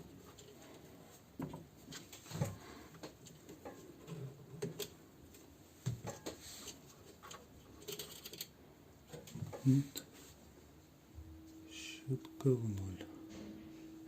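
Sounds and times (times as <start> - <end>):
clicks and knocks of handling parts: 1.4 - 10.1.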